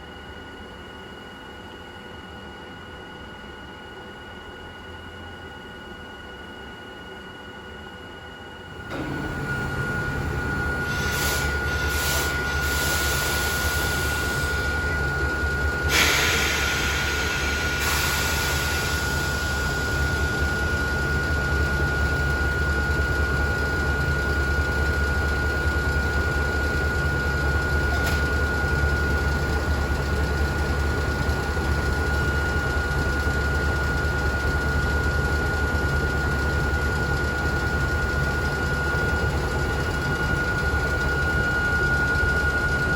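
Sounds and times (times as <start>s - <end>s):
motor-generator hum and whine: 0.0s - 42.9s
hiss: 10.9s - 14.7s, 15.9s - 19.6s.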